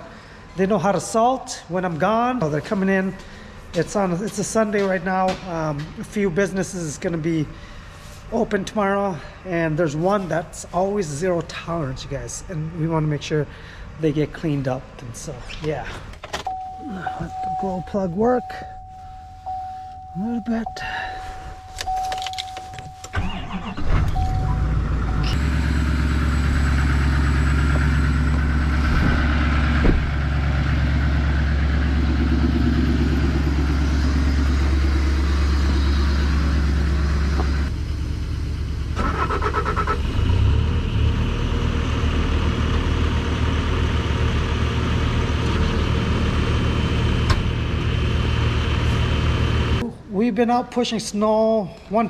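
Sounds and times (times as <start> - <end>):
warning beep: 16.5 - 25.4
diesel engine running: 19.4 - 49.8.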